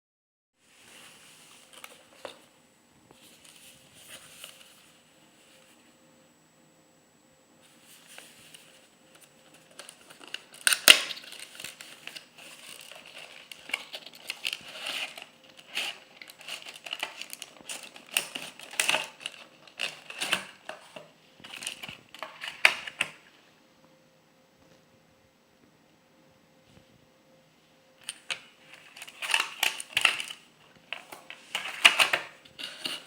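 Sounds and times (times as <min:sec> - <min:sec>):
packaging crinkling and rustling: 0:00.8 - 0:02.5, 0:03.1 - 0:05.8, 0:07.7 - 0:23.3, 0:28.0 - 0:33.0.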